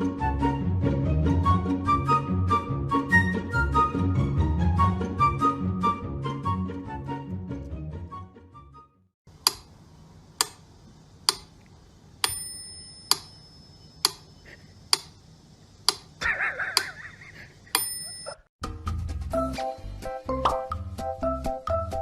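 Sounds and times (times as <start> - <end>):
sharp clicks: 9.3 - 9.8, 10.4 - 10.6, 11.2 - 12.4, 14.0 - 14.3, 14.9 - 15.2, 15.8 - 16.2.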